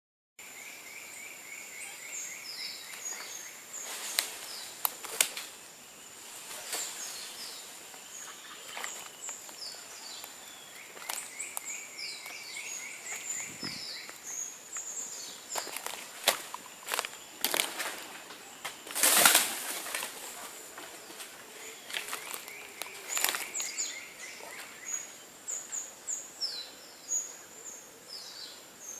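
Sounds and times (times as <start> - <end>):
birds chirping: 0.4 - 28.9
insect drone: 0.4 - 28.9
branches cracking: 2.9 - 5.6, 6.2 - 7.6, 8.5 - 24.8.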